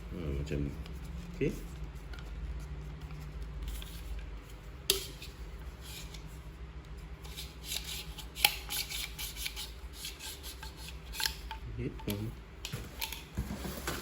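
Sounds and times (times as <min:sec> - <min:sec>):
plastic packaging rustling: 0:12.6 - 0:14.0.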